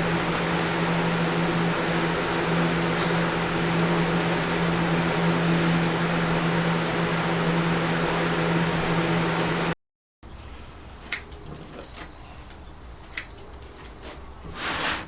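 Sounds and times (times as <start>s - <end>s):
machine motor humming and rushing: 0.0s - 9.8s.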